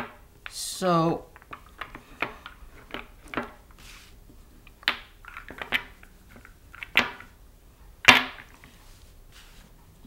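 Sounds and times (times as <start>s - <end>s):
wooden blocks clacking: 1.3s - 3.6s, 4.6s - 7.4s, 8.0s - 8.6s.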